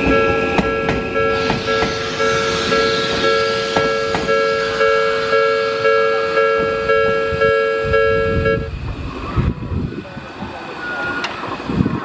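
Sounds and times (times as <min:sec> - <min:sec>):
level crossing warning bell: 0:00.0 - 0:08.7
train noise: 0:00.0 - 0:12.0.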